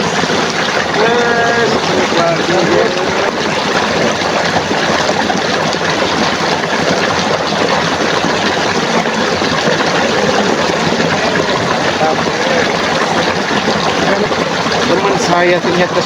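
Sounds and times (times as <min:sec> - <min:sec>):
stream water flowing: 0:00.0 - 0:16.0.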